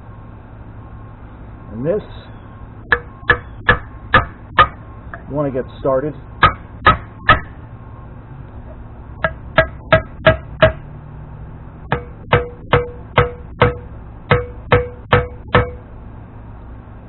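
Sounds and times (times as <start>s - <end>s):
hammer striking steel seal driver: 6.4s - 7.5s, 9.2s - 10.8s, 11.9s - 15.8s.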